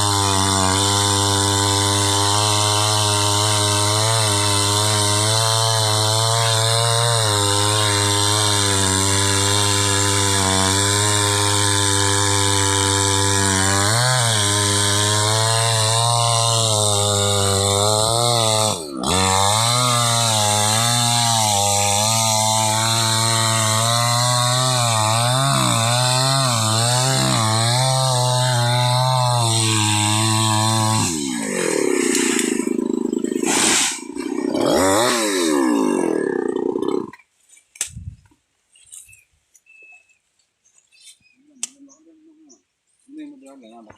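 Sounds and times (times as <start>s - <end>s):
chainsaw cutting: 0.0s - 39.2s.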